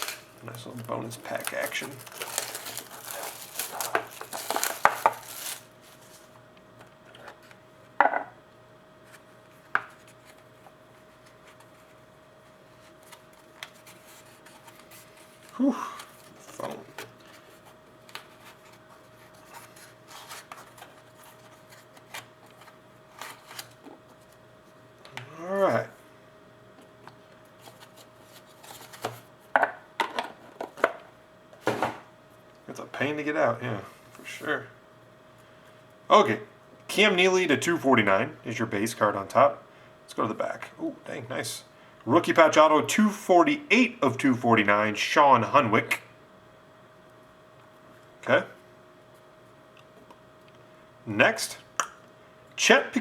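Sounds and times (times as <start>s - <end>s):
cards clicking and rustling: 0.0s - 5.7s
faint steady hum: 0.0s - 53.0s.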